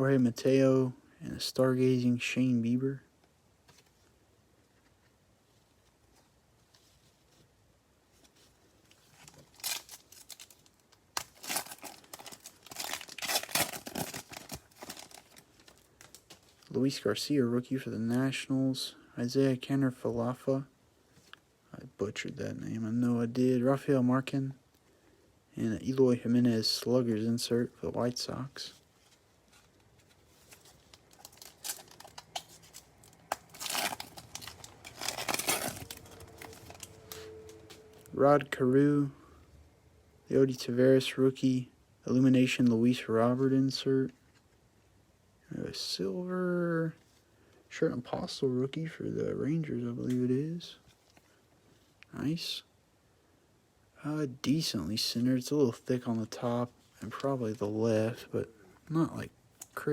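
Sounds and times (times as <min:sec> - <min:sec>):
cards clicking and rustling: 0:09.2 - 0:16.7, 0:29.5 - 0:37.6
wrapper being torn and crinkled: 0:09.2 - 0:16.7, 0:30.3 - 0:37.6.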